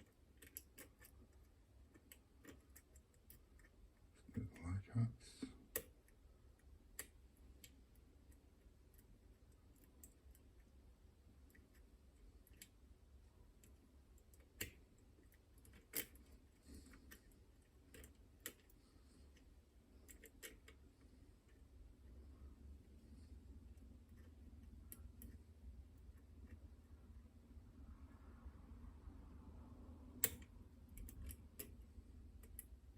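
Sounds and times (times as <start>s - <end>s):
lock picking metallic clicks: 0.0s - 3.7s, 13.6s - 16.3s, 30.2s - 31.8s
faint low hum: 0.0s - 32.9s.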